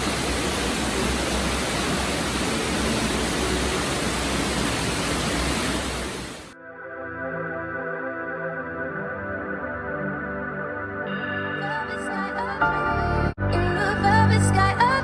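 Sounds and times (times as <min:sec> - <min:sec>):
loud rushing static noise: 0:00.0 - 0:06.6
music: 0:06.6 - 0:15.0.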